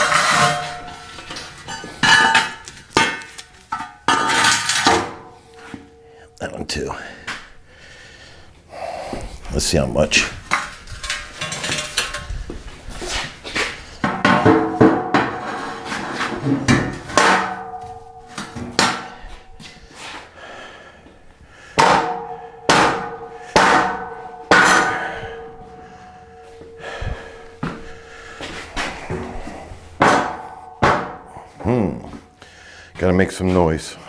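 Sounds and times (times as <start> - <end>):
steel parts clanking: 0.0 - 6.0, 10.5 - 12.4.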